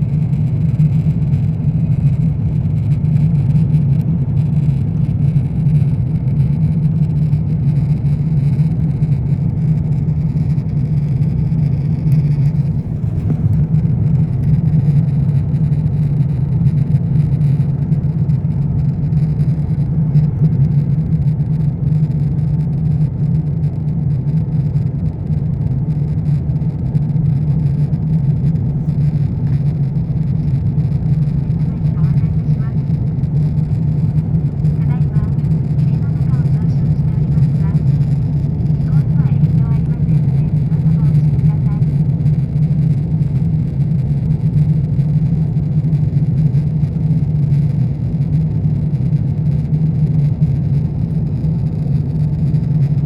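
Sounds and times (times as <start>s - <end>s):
jet engine cabin drone: 0.0s - 53.0s.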